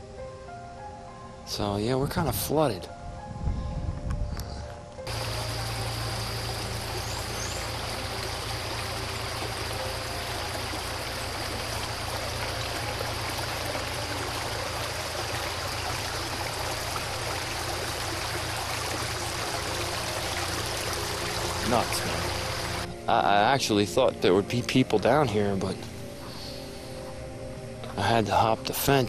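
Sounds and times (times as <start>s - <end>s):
floodwater rushing: 5.1s - 22.9s.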